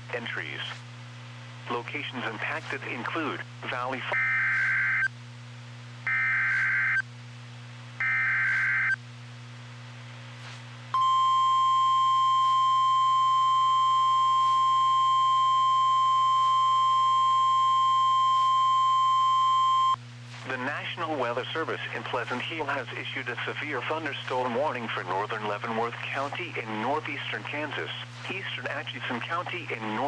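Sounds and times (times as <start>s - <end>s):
steady warning alarm tone: 11.0s - 20.0s.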